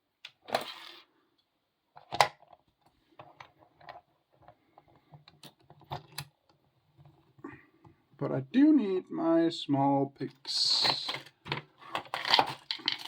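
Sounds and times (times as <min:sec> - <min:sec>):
lock-picking tools clicking and rattling: 0:05.0 - 0:06.6, 0:10.8 - 0:13.0.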